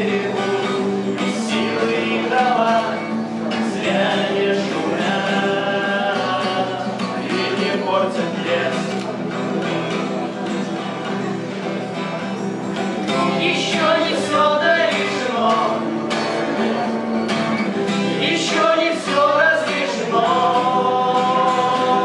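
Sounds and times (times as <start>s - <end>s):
man singing: 0.0s - 9.1s, 13.1s - 16.1s, 18.1s - 22.0s
guitar: 0.0s - 22.0s.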